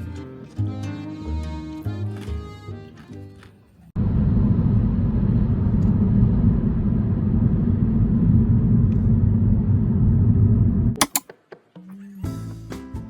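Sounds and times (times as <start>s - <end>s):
low rumbling: 4.0s - 11.0s.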